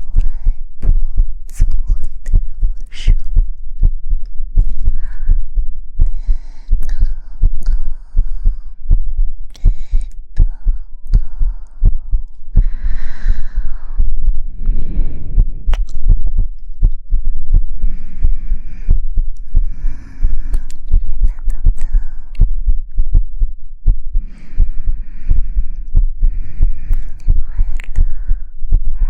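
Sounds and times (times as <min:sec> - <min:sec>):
soft low thumps: 0:00.0 - 0:29.0
breathy whisper-like rustles: 0:24.2 - 0:29.0.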